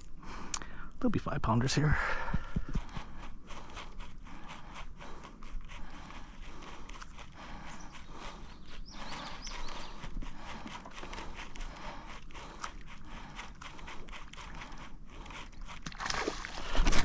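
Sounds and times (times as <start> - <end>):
fishing gear clicking and knocking: 6.4 - 17.0.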